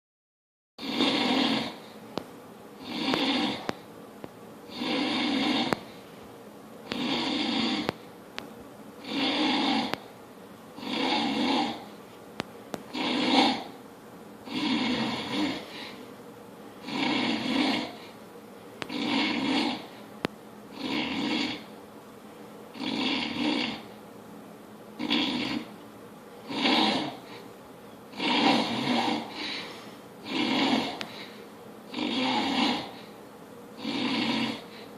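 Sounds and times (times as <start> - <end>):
man snoring: 0.8 - 1.9, 2.8 - 3.8, 4.7 - 6.0, 6.9 - 8.0, 9.0 - 10.0, 10.8 - 11.9, 12.9 - 13.8, 14.4 - 16.0, 16.8 - 18.1, 18.8 - 20.0, 20.7 - 21.7, 22.7 - 23.9, 25.0 - 25.7, 26.4 - 27.4, 28.1 - 31.3, 31.9 - 33.1, 33.8 - 34.9.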